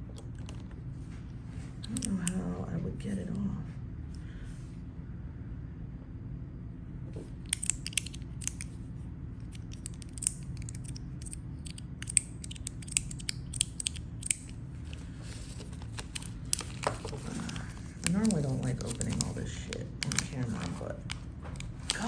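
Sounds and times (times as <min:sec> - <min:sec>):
sharp clicks and snips: 0:09.6 - 0:14.6.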